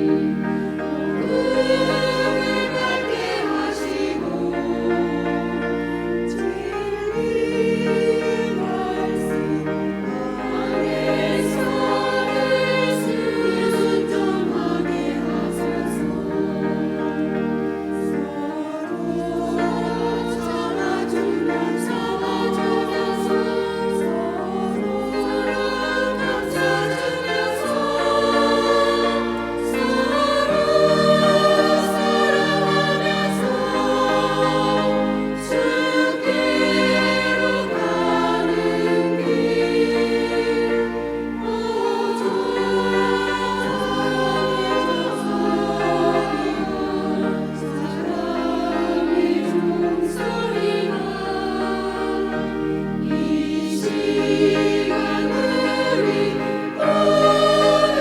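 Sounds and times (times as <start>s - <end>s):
choir singing a hymn: 0.0s - 58.0s.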